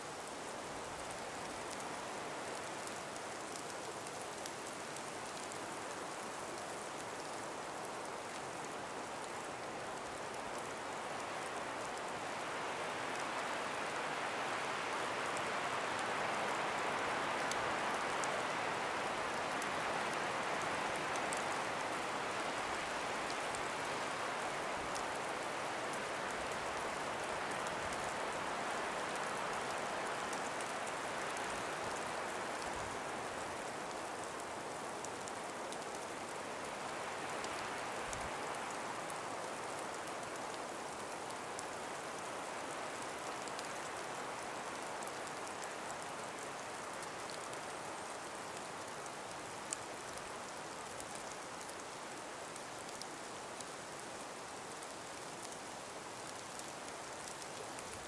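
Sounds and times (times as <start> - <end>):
breeze through trees: 0.0 - 58.0
faint ticks: 42.8 - 58.0.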